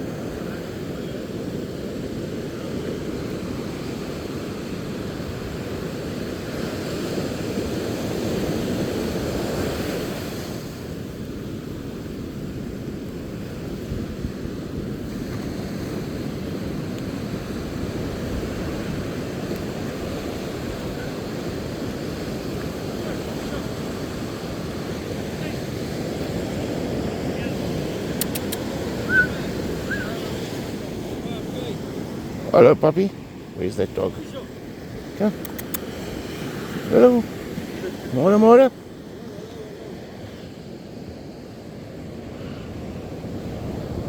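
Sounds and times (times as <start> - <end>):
wind on microphone: 26.0 - 31.0.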